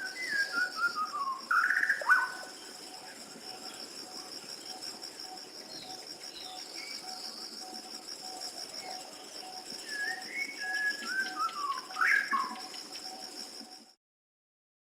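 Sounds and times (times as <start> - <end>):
whistled bird calls: 0.0 - 2.5, 8.8 - 12.8
faint bird chirps: 0.0 - 3.9, 4.6 - 14.0.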